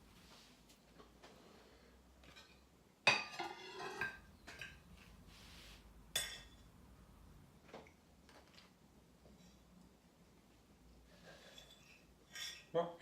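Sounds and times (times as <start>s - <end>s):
cutlery clinking against dishes: 2.2s - 4.8s, 6.2s - 6.7s, 11.4s - 12.7s.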